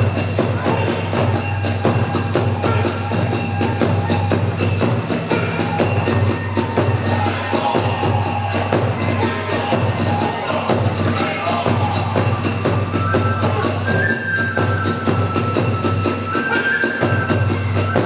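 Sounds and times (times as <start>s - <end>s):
flute melody: 0.0s - 18.0s
hand cymbals beating: 0.0s - 18.0s
taiko drums beating: 0.0s - 18.0s.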